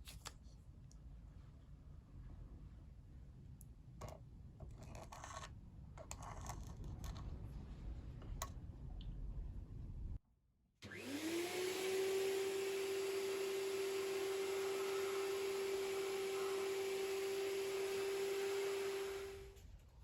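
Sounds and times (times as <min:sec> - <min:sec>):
handling clicks and scrapes: 0:04.6 - 0:07.4
low rumble: 0:06.7 - 0:10.2
small electric motor whining: 0:10.9 - 0:19.6.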